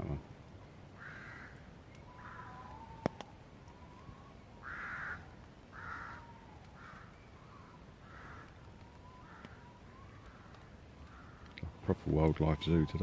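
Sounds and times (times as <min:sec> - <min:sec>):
bird harsh calls: 0:01.0 - 0:03.0, 0:04.6 - 0:11.6.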